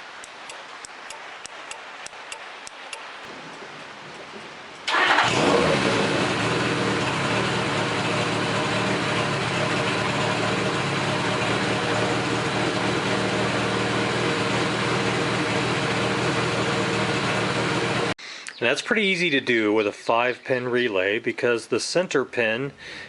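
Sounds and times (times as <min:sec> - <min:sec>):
motorcycle engine idling: 0:04.9 - 0:18.2.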